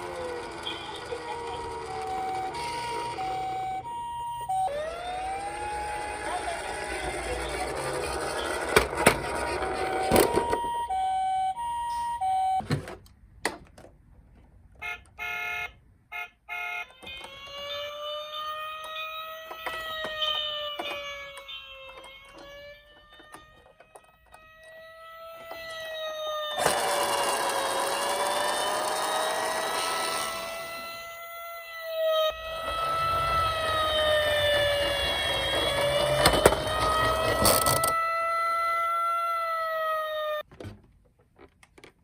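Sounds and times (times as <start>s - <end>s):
rising and falling siren wail: 0.0s - 8.8s, 9.4s - 12.6s, 16.5s - 40.5s
two-tone toy siren: 0.0s - 12.7s, 14.8s - 40.5s.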